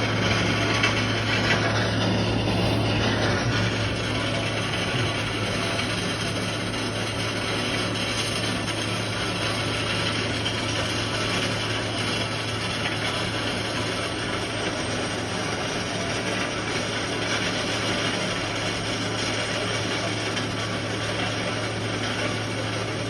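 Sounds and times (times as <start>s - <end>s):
low hum: 0.0s - 9.7s
loud mechanical noise: 0.0s - 23.0s.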